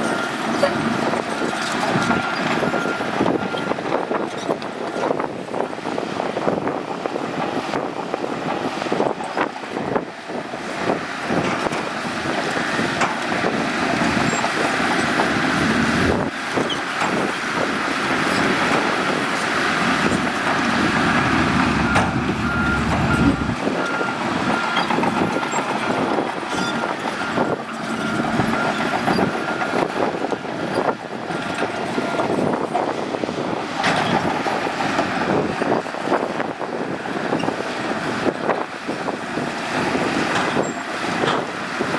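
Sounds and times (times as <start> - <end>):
bulldozer diesel engine working: 0.0 - 41.9
reversing alarm beeping: 20.0 - 29.8.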